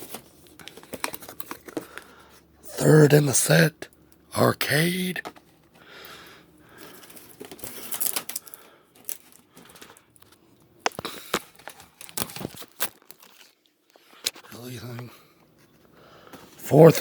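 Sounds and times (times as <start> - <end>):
cardboard and plastic rustling: 0.0 - 2.5, 6.7 - 15.0.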